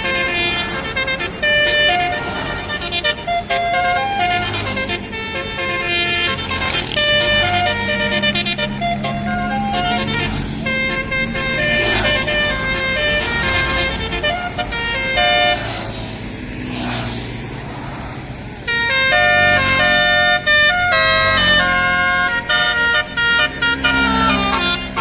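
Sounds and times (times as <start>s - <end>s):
bus horn melody: 0.0s - 16.2s, 18.6s - 25.0s
traffic noise: 0.0s - 25.0s.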